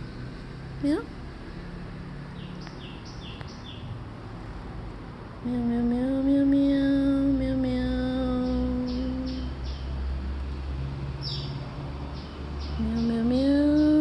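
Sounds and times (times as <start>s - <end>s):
bird chirping: 2.4s - 3.9s, 8.3s - 10.0s, 11.2s - 14.0s.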